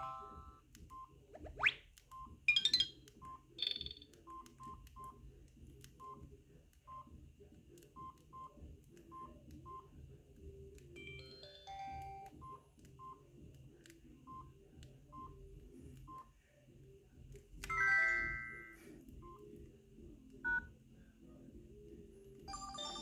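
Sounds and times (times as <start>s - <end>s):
phone alert tone: 0.0s - 0.5s, 2.5s - 2.9s, 17.7s - 18.8s, 22.5s - 23.0s
phone keypad beeps: 2.5s - 4.5s, 11.0s - 12.6s, 20.5s - 20.7s, 22.5s - 23.0s.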